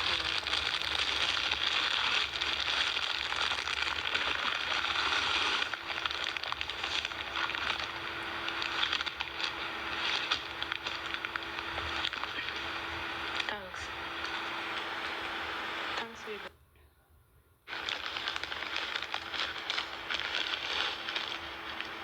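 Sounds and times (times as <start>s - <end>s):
plastic packaging and clothes rustling: 0.0s - 16.5s, 17.7s - 22.0s
steady hiss: 0.0s - 16.5s
faint steady hum: 0.0s - 22.0s.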